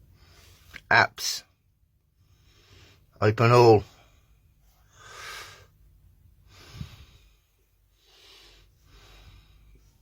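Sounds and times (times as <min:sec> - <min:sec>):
person breathing softly: 0:00.0 - 0:00.7, 0:02.1 - 0:03.2, 0:03.9 - 0:10.0.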